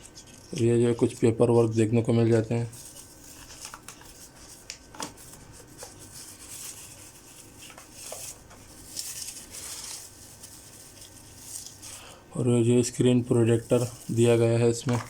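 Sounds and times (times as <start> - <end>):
paper rustling: 0.0 - 12.2, 13.0 - 15.0.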